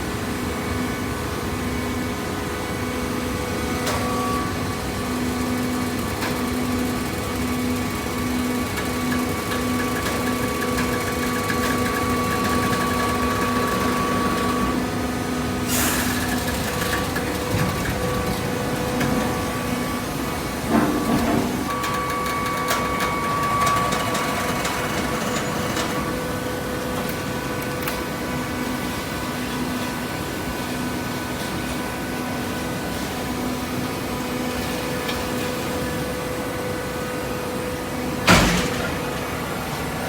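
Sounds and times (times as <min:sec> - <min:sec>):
machinery humming and clicking: 0:00.0 - 0:40.0.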